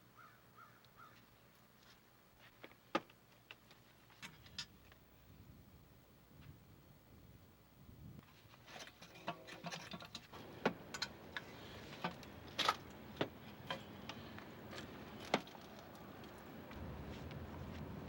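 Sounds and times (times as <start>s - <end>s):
metal tools clinking: 8.7s - 12.9s.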